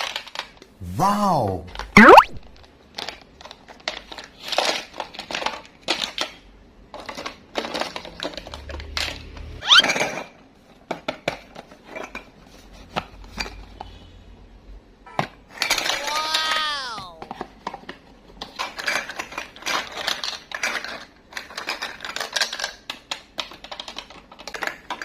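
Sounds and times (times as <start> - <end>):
candies clattering in plastic dish: 3.0 - 6.4, 7.0 - 9.1
short squeaky sliding tone: 9.6 - 10.0.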